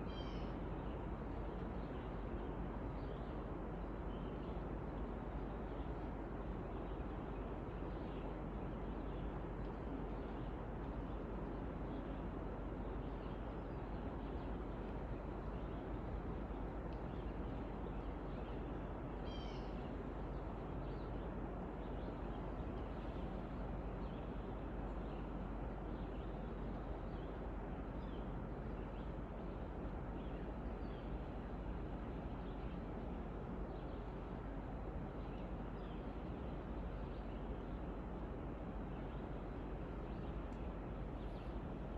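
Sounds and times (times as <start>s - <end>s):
outdoor ambient hiss: 0.0s - 41.9s.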